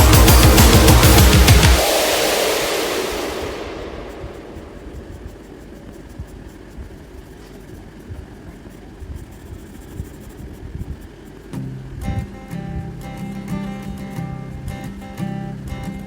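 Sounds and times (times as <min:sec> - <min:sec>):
strummed acoustic guitar: 0:00.0 - 0:01.8, 0:11.6 - 0:16.0.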